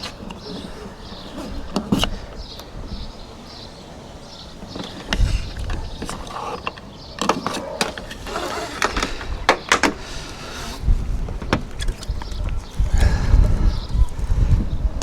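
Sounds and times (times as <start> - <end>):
tools and materials handled: 0.0 - 2.4, 4.6 - 12.8.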